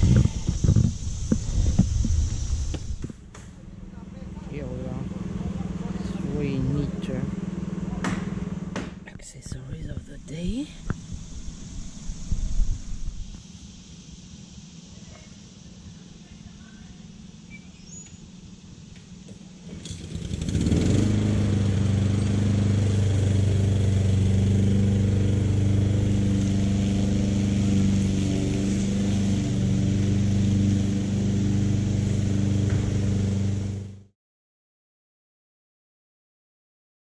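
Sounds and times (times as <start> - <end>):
string trimmer engine running: 4.2 - 8.8, 18.2 - 34.1.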